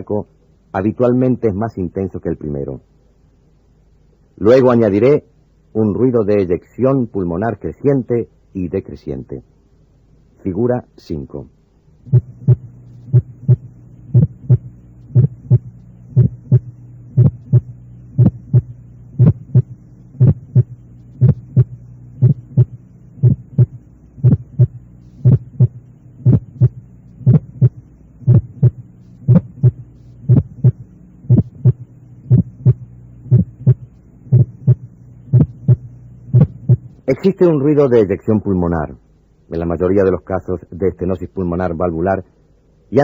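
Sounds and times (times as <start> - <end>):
low hum: 9.2 - 43.0
heartbeat: 12.1 - 37.0.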